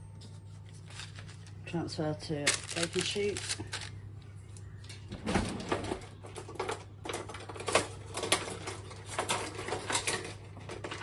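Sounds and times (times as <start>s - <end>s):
pastry set on baking sheet: 0.3s - 4.8s.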